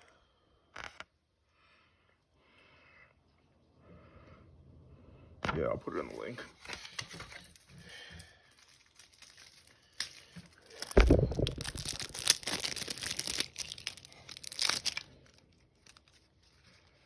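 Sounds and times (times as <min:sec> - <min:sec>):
packaging crinkling and tearing: 0:06.6 - 0:17.0
heavy thump: 0:11.0 - 0:11.9.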